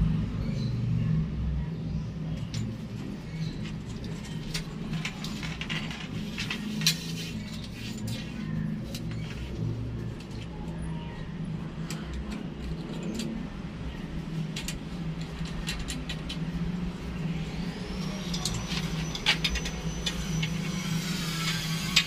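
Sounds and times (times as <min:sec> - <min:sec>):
sharp clicks and light knocks: 0:14.5 - 0:16.6.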